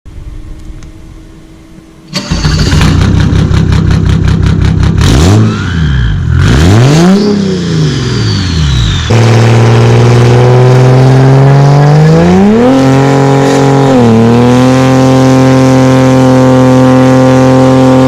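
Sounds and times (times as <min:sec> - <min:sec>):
engine revving: 0:02.1 - 0:18.0
turbo whistle: 0:07.9 - 0:10.2.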